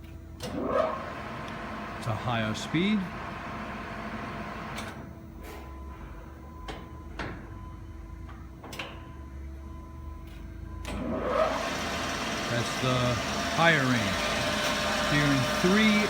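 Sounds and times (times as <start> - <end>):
lathe machine hum: 11.0 - 16.0
lathe spindle whine: 11.0 - 16.0.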